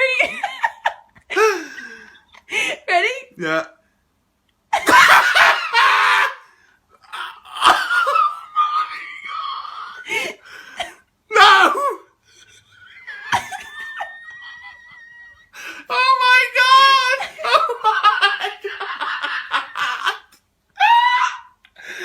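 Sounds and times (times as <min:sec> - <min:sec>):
person shrieking with laughter: 0:04.8 - 0:06.4, 0:07.1 - 0:10.3, 0:11.3 - 0:12.0, 0:12.8 - 0:20.2, 0:20.8 - 0:21.6
person shouting: 0:11.3 - 0:12.0.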